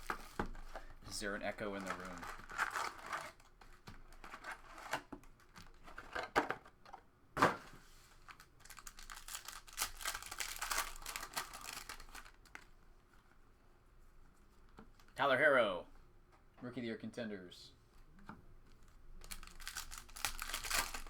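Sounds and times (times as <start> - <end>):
card pack wrappers crinkling: 0.0 - 4.9, 8.2 - 12.7, 18.8 - 21.0
cards being handled: 1.6 - 5.2.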